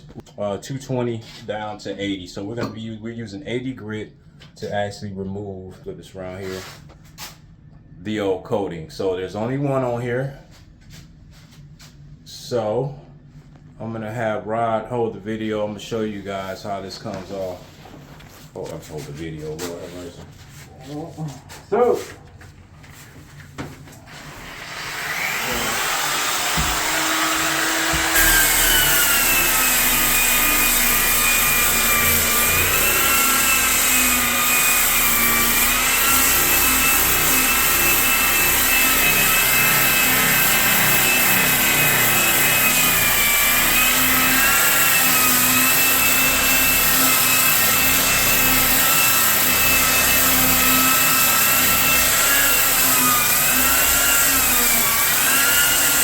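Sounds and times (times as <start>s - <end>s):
electric sander whining: 24.5s - 56.0s.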